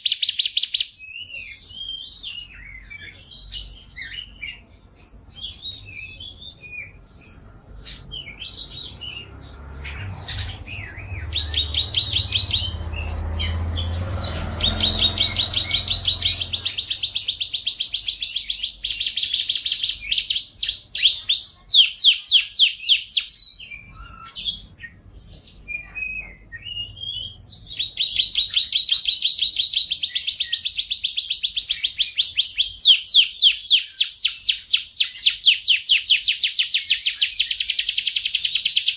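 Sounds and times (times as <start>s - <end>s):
canary singing trills: 0.0s - 38.9s
low rumble: 7.4s - 17.4s.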